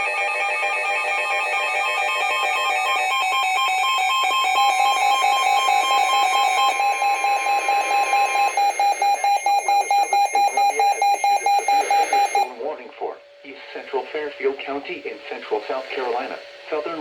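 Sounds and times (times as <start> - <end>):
steady warning tone: 0.0 - 17.0
rapid pulsing electronic beeps: 2.4 - 12.6.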